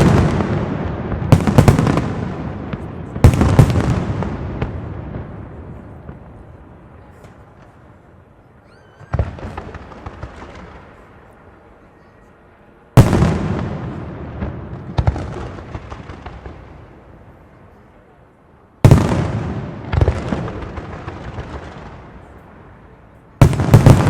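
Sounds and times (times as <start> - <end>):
firework crackling: 0.0 - 7.7, 9.1 - 11.3, 23.4 - 24.0.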